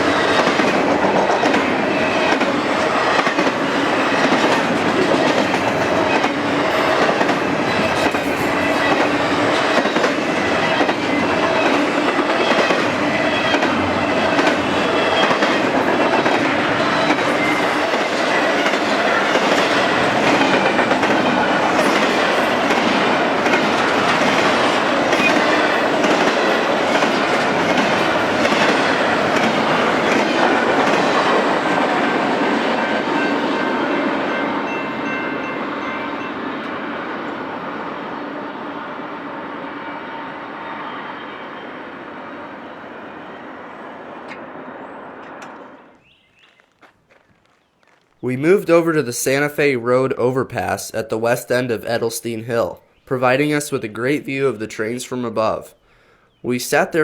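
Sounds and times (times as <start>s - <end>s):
train wheels clattering over rails: 0.0s - 35.6s.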